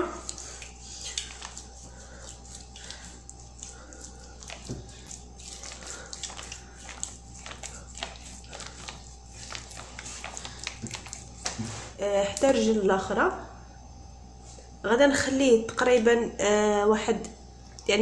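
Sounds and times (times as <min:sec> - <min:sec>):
hands scrubbing wet skin: 0:00.0 - 0:12.0.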